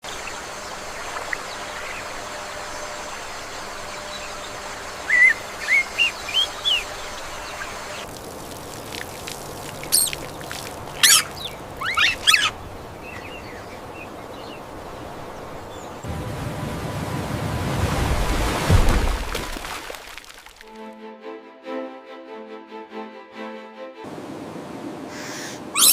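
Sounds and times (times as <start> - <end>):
birds chirping: 0.0 - 8.1, 9.6 - 16.1, 25.1 - 25.9
running water hiss: 0.0 - 20.7
low rushing noise: 16.0 - 19.3.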